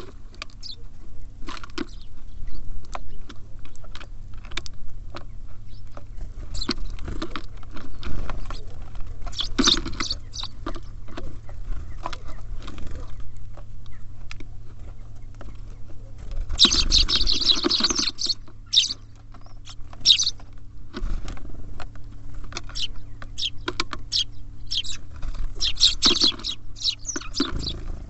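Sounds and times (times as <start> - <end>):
beaks pecking on bird feeder: 0.3 - 2.1, 2.9 - 13.3, 13.9 - 28.0
short high bird chirps: 9.3 - 10.6, 16.6 - 19.0, 19.6 - 20.4, 22.7 - 25.0, 25.6 - 27.8.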